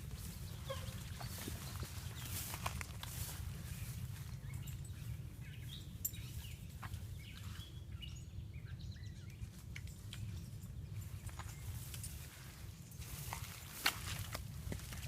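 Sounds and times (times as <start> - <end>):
small birds chirping: 0.0 - 13.6
footfalls and snaps in brush: 13.1 - 15.0.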